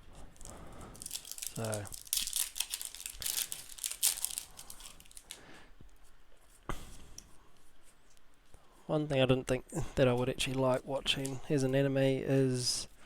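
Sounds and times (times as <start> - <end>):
foil wrapper crinkling and tearing: 0.4 - 5.4.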